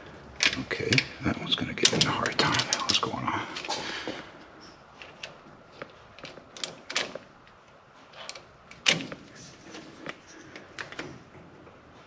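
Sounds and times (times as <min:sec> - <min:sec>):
tools clicking and knocking: 0:05.0 - 0:09.4.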